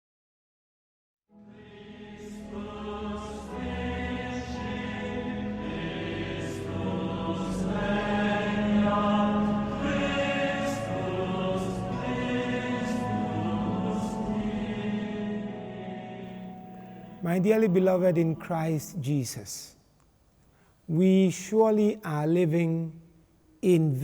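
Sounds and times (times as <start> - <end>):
slow choral chant: 1.3 - 19.6.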